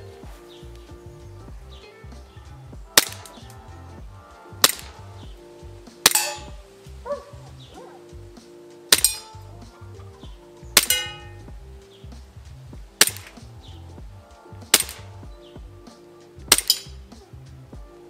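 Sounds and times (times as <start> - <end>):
airsoft pistol shots: 2.9 - 3.5, 4.6 - 5.0, 6.0 - 6.6, 8.9 - 9.4, 10.8 - 11.3, 13.0 - 13.4, 14.7 - 15.2, 16.5 - 17.0
pellets hitting metal targets: 2.9 - 3.5, 4.6 - 5.0, 6.0 - 6.7, 8.9 - 9.4, 10.8 - 11.4, 13.0 - 13.5, 14.6 - 15.2, 16.5 - 17.0.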